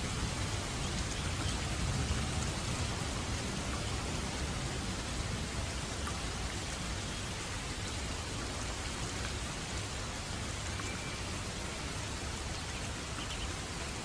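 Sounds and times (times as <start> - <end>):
raindrop ticks: 0.0 - 6.9
steady rain hiss: 0.0 - 14.0.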